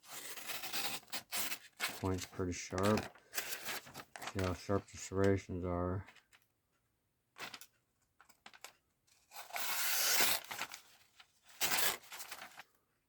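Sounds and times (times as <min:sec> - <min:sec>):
knife tearing through paper: 0:09.3 - 0:10.8, 0:11.6 - 0:12.6.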